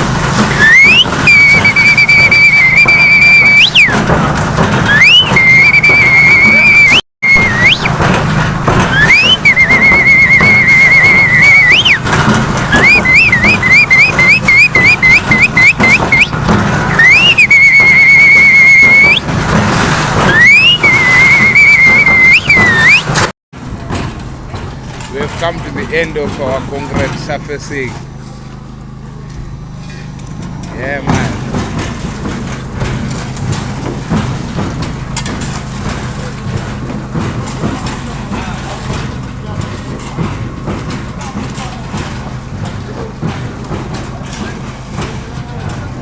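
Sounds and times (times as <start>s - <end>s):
quick rising chirps: 0.5s - 3.9s, 4.9s - 7.9s, 8.9s - 12.0s, 12.8s - 19.2s, 20.3s - 23.2s
loud wavering whistling: 0.5s - 4.0s, 4.9s - 7.9s, 8.9s - 12.1s, 12.7s - 19.2s, 20.2s - 23.2s.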